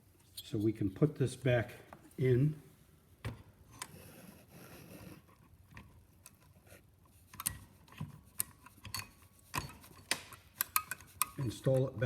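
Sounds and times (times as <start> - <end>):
handling noise of metal part: 7.2 - 12.0.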